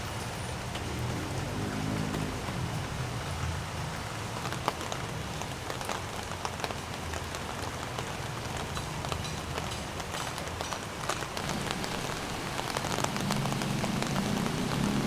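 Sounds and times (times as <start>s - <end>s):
steady rain: 0.0s - 15.0s
sharp raindrop ticks: 3.9s - 15.0s.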